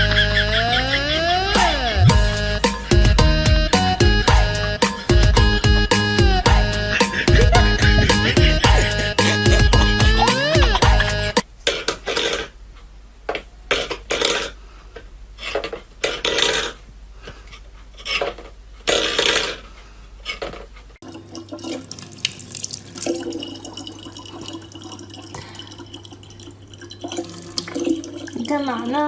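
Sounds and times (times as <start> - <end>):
low hum: 0.0 - 11.4
running water: 21.0 - 29.0
water splashing and sloshing: 21.0 - 29.0.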